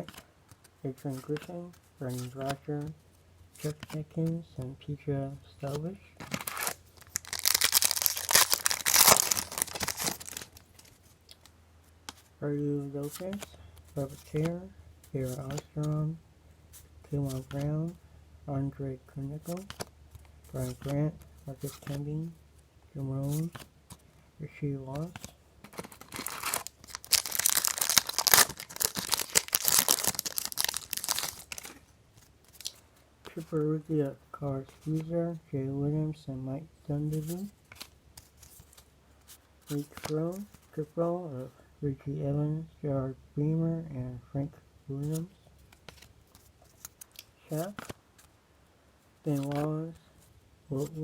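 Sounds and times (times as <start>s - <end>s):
wrapper being torn and crinkled: 6.3s - 10.9s, 25.7s - 31.9s, 32.5s - 32.8s.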